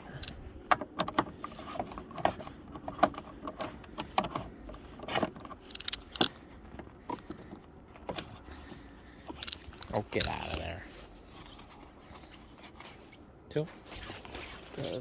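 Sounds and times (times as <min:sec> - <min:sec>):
sharp clicks and knocks: 0:00.2 - 0:08.6.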